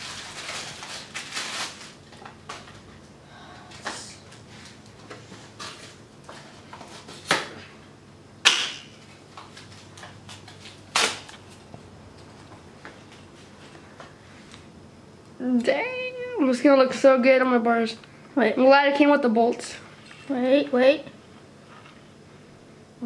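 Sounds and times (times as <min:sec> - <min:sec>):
packaging rustling: 0:00.0 - 0:02.9.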